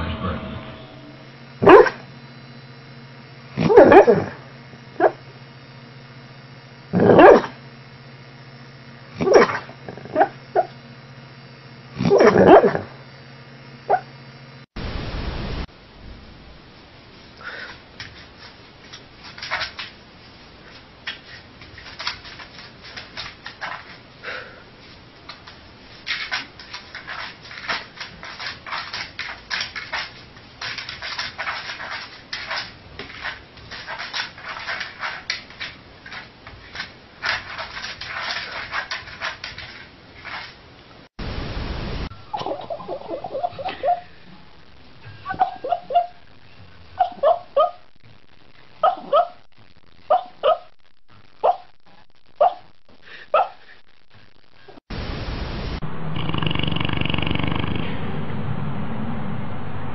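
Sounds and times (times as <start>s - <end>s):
dog whimpering: 45.2s - 46.2s, 47.0s - 47.8s.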